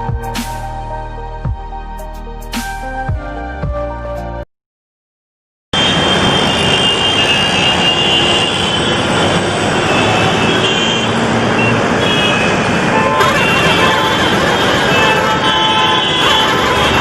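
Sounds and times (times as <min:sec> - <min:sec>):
dense road traffic: 0:00.0 - 0:01.7, 0:05.8 - 0:17.0.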